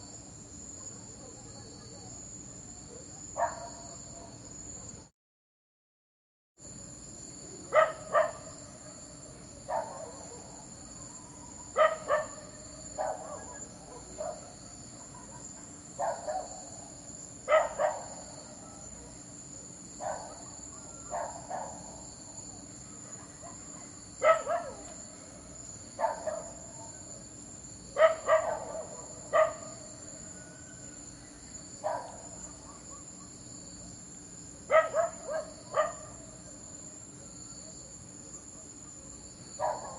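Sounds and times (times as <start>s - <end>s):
insects trilling: 0.0s - 5.1s, 6.6s - 39.9s
dog barking: 2.9s - 5.0s, 7.7s - 9.0s, 9.7s - 10.6s, 11.7s - 16.7s, 17.5s - 19.2s, 20.0s - 22.0s, 23.0s - 25.0s, 26.0s - 26.8s, 28.0s - 29.9s, 31.8s - 33.3s, 34.7s - 36.2s, 38.5s - 39.9s.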